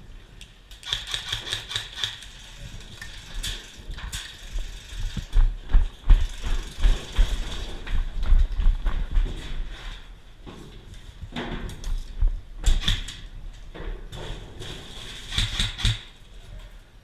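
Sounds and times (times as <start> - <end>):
running footsteps thumping: 5.2 - 9.6.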